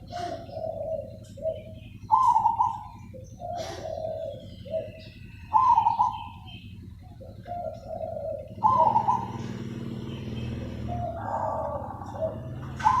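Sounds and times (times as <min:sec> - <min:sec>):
dove cooing: 0:00.0 - 0:13.0.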